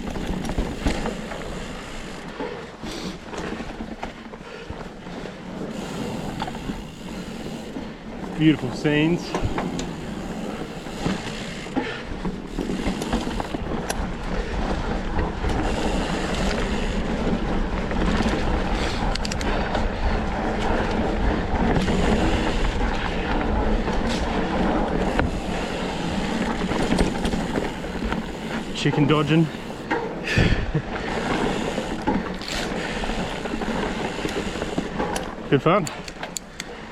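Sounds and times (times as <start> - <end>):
bike chattering clicks and knocks: 0.0 - 2.3, 5.7 - 14.2, 18.0 - 19.9, 31.2 - 36.8
bike tyre roar on dirt: 0.0 - 36.9.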